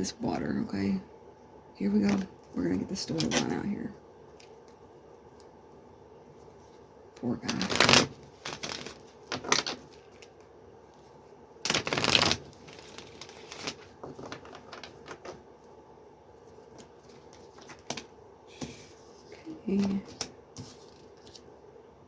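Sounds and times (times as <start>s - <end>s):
cards shuffling: 7.4s - 10.4s, 11.7s - 15.4s, 16.6s - 21.5s
cards clicking and tapping: 11.7s - 15.4s.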